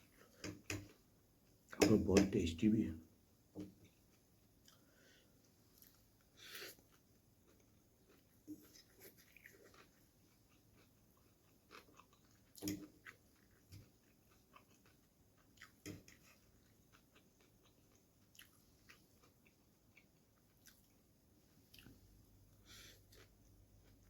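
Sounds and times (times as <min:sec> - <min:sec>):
mouth chewing noodles: 0:05.6 - 0:24.0.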